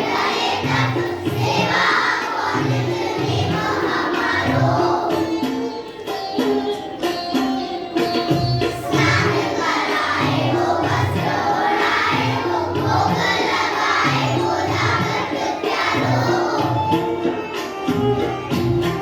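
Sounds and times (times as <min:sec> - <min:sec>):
devotional singing voices: 0:00.0 - 0:05.2, 0:08.9 - 0:16.6
instrumental accompaniment: 0:00.0 - 0:19.0.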